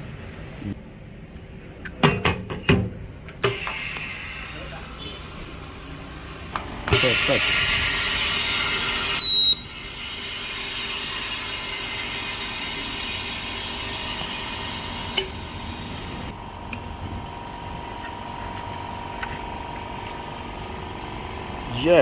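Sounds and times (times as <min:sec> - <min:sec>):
air venting hiss: 0:03.4 - 0:16.4.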